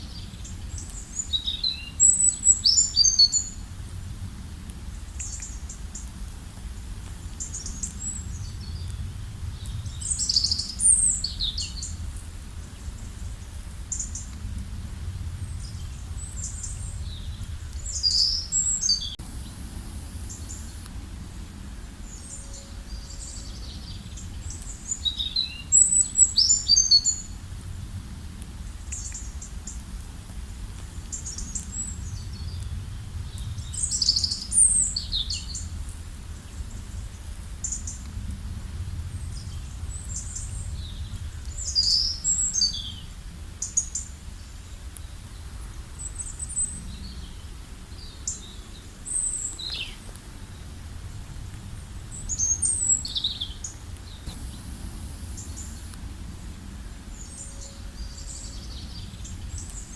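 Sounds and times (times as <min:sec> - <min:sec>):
small birds chirping: 0:00.0 - 0:03.6, 0:07.2 - 0:12.0, 0:15.4 - 0:27.4, 0:39.0 - 0:50.8, 0:51.8 - 0:56.2
steady low rumble: 0:03.4 - 0:59.9.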